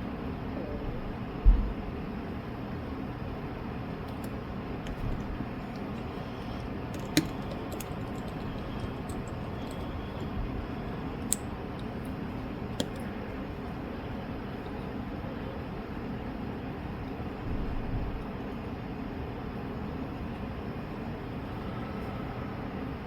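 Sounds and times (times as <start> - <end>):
steady low hum: 1.9 - 23.0
small tool clicks on metal: 4.1 - 10.4, 12.7 - 13.1.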